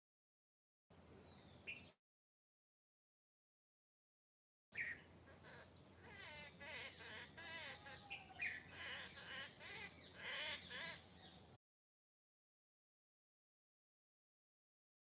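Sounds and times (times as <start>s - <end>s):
songbirds chirping and singing: 1.0s - 2.0s, 4.8s - 11.6s.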